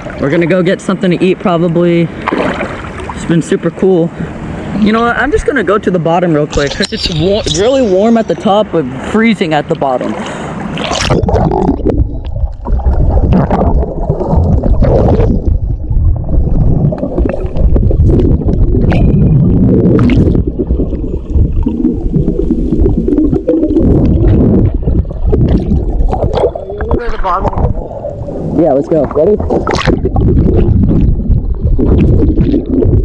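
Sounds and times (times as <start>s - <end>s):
underwater rumble of moving water: 0.0s - 33.0s
gurgling bubbles: 9.9s - 33.0s.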